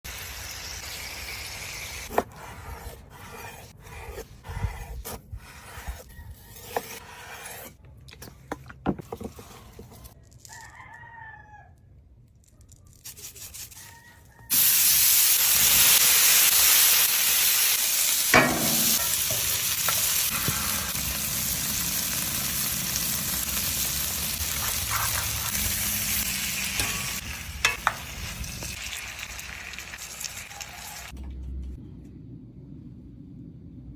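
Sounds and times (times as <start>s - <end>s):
food sizzling in a hot pan: 0.1s - 2.1s, 14.5s - 31.1s.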